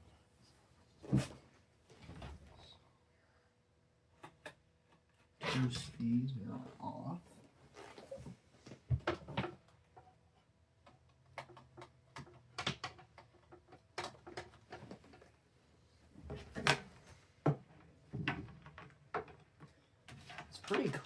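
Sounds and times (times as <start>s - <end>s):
plastic fan clicks and knocks: 10.8s - 15.3s.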